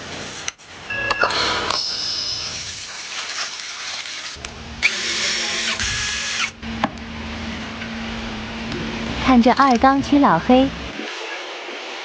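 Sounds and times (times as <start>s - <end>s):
power tool running: 4.0s - 9.2s
low hum: 4.4s - 11.0s.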